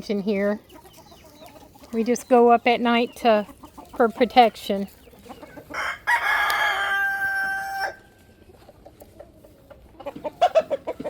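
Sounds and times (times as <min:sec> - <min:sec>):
chicken clucks: 0:00.0 - 0:11.0
rooster crowing: 0:05.7 - 0:08.1.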